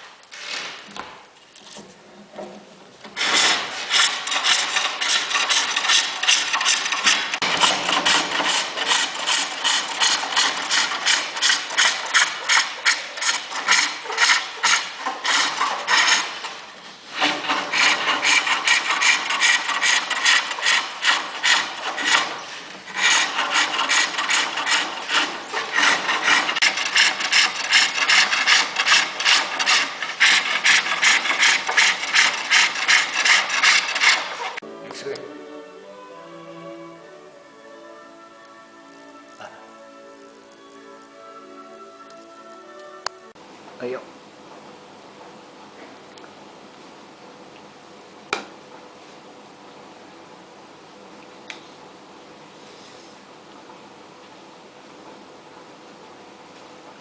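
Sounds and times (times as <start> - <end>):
lathe tool scraping workpiece: 3.2 - 34.6.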